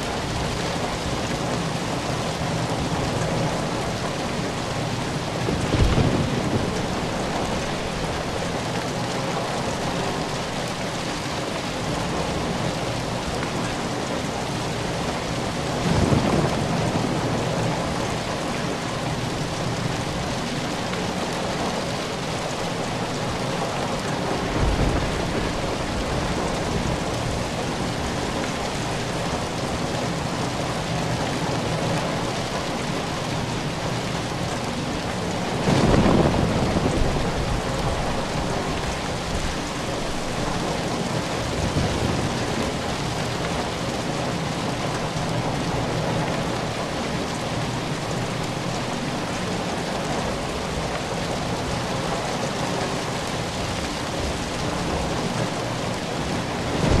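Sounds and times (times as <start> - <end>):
steady rain: 0.0 - 57.0
low thunder rumbles: 2.5 - 8.7, 15.5 - 20.0, 24.2 - 29.3, 35.4 - 39.6, 54.2 - 57.0.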